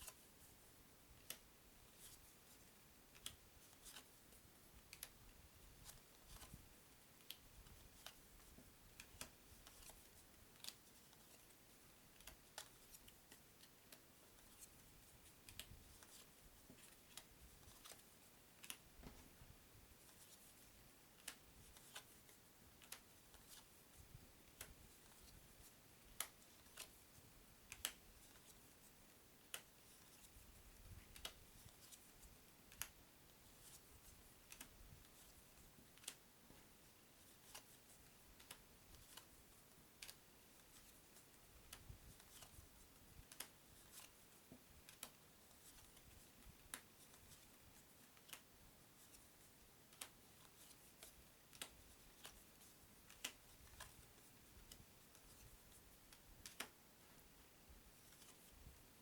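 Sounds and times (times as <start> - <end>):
playing cards clicking: 53.0 - 54.0.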